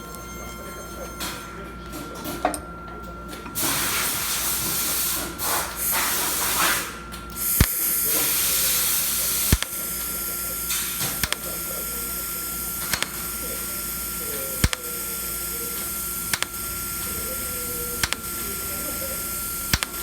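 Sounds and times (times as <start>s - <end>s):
welding arc hissing: 3.7s - 20.0s
sharp clicks: 9.5s - 9.8s, 11.2s - 11.5s, 12.9s - 13.3s, 14.6s - 14.9s, 16.3s - 17.1s, 17.8s - 18.4s, 19.6s - 20.0s.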